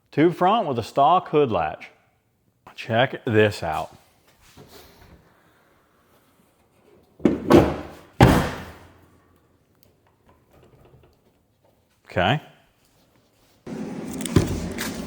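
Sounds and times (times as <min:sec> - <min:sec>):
car hood slamming shut: 0:07.4 - 0:08.8.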